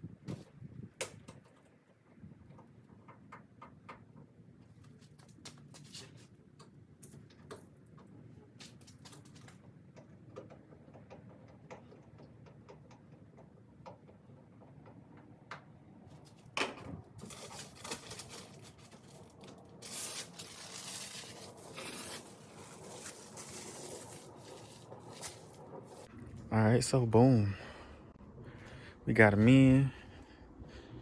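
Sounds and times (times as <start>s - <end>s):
rustling and scraping of parts: 4.0s - 12.7s, 16.1s - 26.1s.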